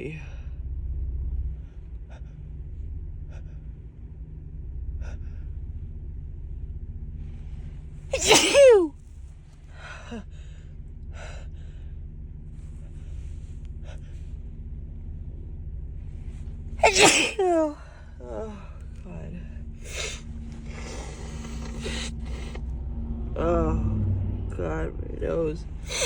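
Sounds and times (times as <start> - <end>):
woman sneezing: 8.2 - 8.9, 16.8 - 17.8, 19.9 - 20.2, 20.8 - 22.6
short breaths: 19.9 - 22.6.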